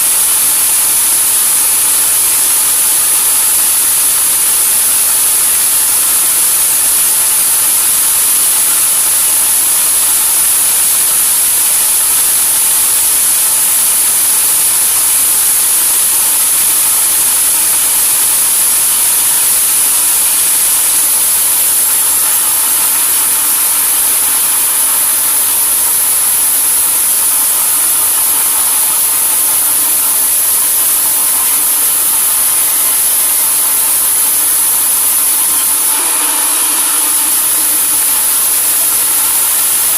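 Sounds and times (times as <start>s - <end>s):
sawmill machinery running: 0.0s - 39.9s.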